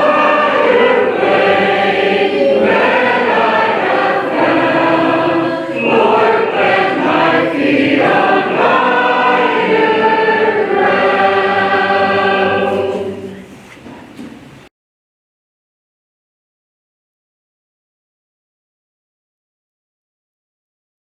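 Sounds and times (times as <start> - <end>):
congregation singing a hymn: 0.0 - 14.3.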